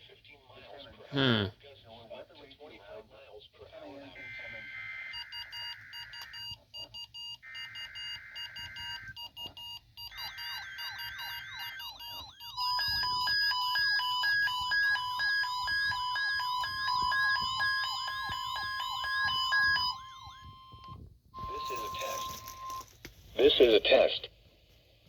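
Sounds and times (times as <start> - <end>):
steady high warning tone: 7.4 - 22.9
screeching digital data bursts: 10.1 - 20.8, 21.4 - 22.8
warbling alert tone: 21.4 - 22.8.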